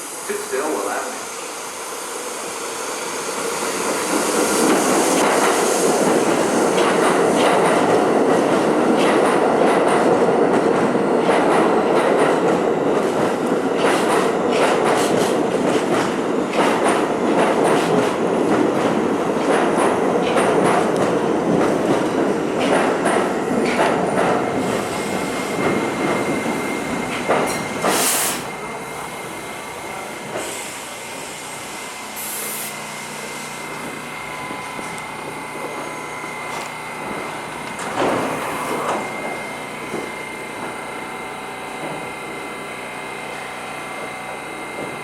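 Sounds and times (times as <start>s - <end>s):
subway train rumbling: 0.0s - 45.0s.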